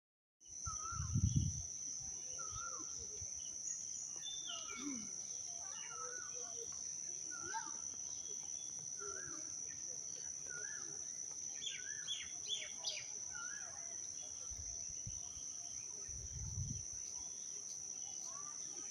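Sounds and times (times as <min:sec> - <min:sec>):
high insect drone: 0:00.5 - 0:18.9
birds chirping: 0:02.3 - 0:14.4.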